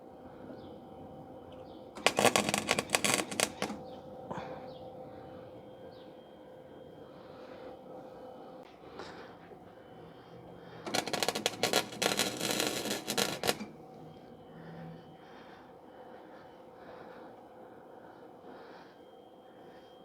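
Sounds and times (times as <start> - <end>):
arc welder crackling: 1.5 - 4.0, 10.9 - 13.8.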